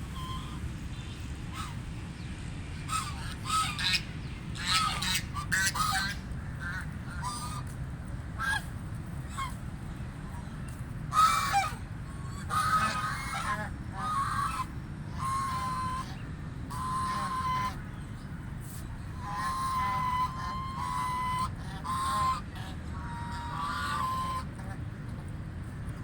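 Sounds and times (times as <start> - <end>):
geese honking: 2.9 - 7.7, 8.4 - 8.7, 11.1 - 17.8, 19.1 - 24.8.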